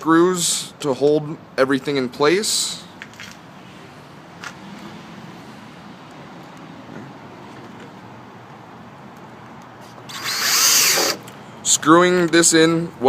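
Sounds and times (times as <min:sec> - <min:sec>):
cordless drill whirring: 0:10.1 - 0:11.3.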